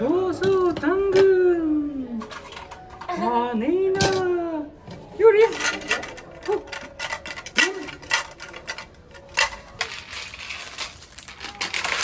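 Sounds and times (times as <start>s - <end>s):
plastic toys clattering: 2.2s - 3.4s, 5.3s - 12.0s.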